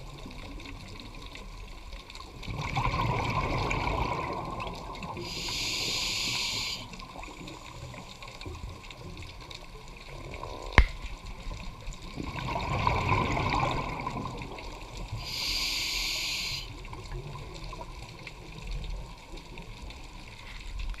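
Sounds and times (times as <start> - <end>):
exhaled air bubbling underwater: 0.0 - 21.0
regulator inhale hiss: 5.2 - 8.0, 15.1 - 16.9.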